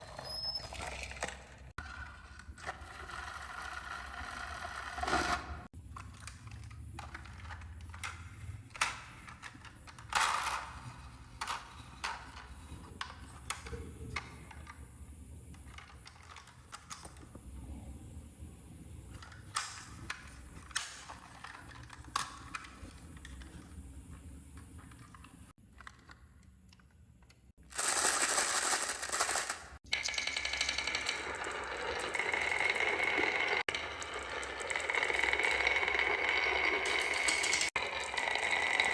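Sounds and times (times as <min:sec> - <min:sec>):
marbles rolling and clacking: 0:08.8 - 0:14.8, 0:27.7 - 0:38.9.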